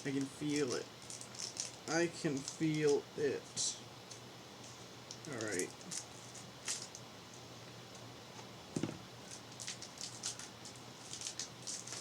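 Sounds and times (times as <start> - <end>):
trading cards rustling: 5.2 - 6.9.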